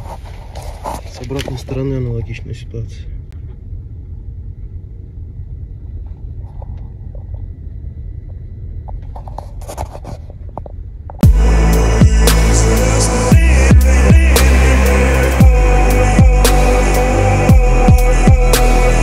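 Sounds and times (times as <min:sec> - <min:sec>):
car road rumble: 0:00.0 - 0:19.0
loud electronic music: 0:11.2 - 0:19.0.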